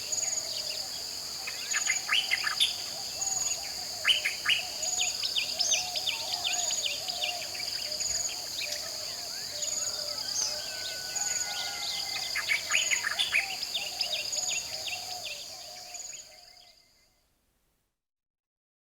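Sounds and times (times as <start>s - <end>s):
birds chirping and calling: 9.6s - 15.4s.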